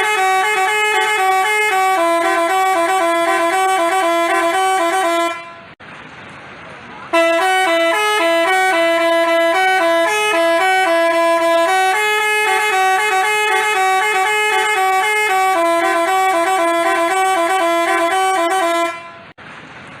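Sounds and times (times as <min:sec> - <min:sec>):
bus horn playing a tune: 0:00.0 - 0:05.8, 0:07.1 - 0:19.4.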